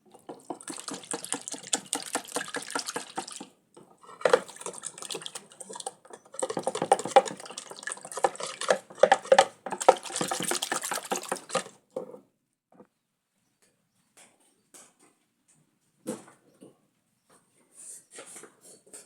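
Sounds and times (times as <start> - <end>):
water running and splashing: 0.0 - 3.5, 4.2 - 11.7.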